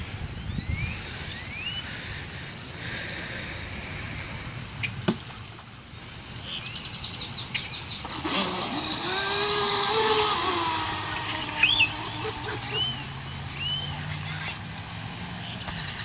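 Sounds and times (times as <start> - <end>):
model speedboat motor whine: 7.7 - 15.8.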